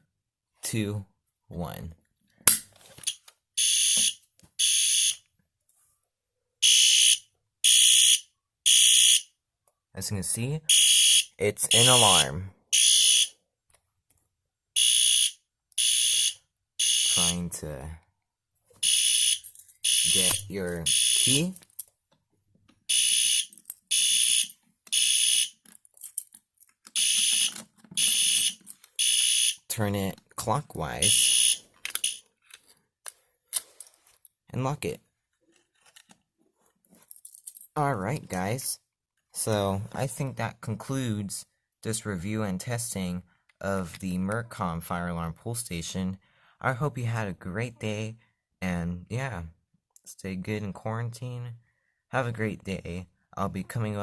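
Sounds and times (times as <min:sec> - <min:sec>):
fire alarm horn blasts: 0:03.6 - 0:05.3, 0:06.6 - 0:09.4, 0:10.6 - 0:13.4, 0:14.7 - 0:17.6, 0:18.8 - 0:21.6, 0:22.9 - 0:25.6, 0:27.0 - 0:29.7, 0:31.0 - 0:32.2
alarm pull station click: 0:10.7 - 0:13.3, 0:18.8 - 0:21.6, 0:26.9 - 0:29.6
faint handling noises: 0:25.6 - 0:28.0, 0:31.7 - 0:34.4, 0:35.2 - 0:38.4.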